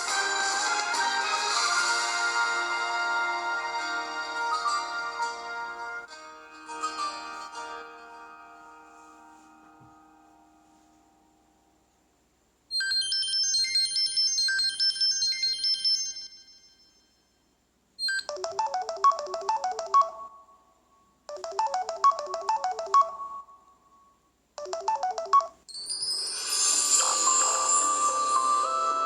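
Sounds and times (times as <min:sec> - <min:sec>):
bright high chime ringtone: 0:12.7 - 0:17.4, 0:18.0 - 0:20.6, 0:21.3 - 0:24.0, 0:24.6 - 0:29.0
fast melodic ringtone: 0:18.1 - 0:20.4, 0:21.3 - 0:23.6, 0:24.6 - 0:29.0.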